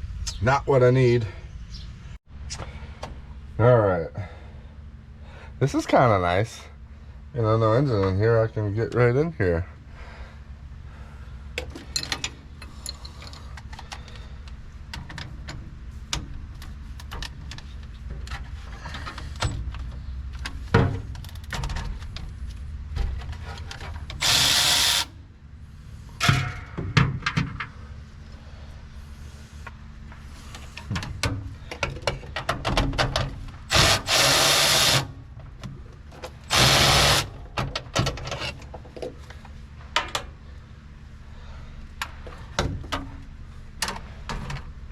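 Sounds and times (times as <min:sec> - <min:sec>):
tools and metal clanking: 0:11.6 - 0:14.1
power drill-driver running: 0:24.2 - 0:25.2, 0:33.7 - 0:35.1, 0:36.5 - 0:37.3.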